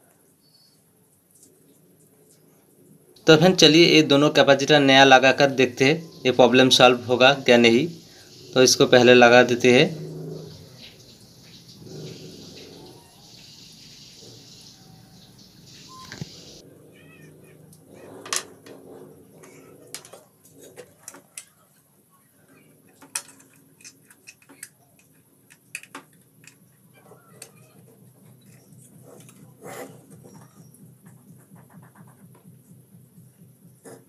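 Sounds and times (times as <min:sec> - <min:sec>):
hiss: 0:07.3 - 0:09.0.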